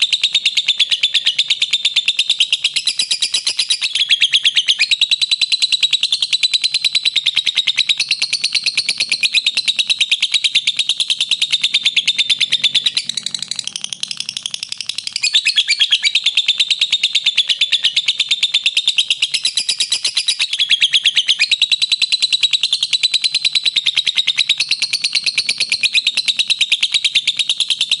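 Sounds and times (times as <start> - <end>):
lovebirds chirping: 10.5 - 18.2.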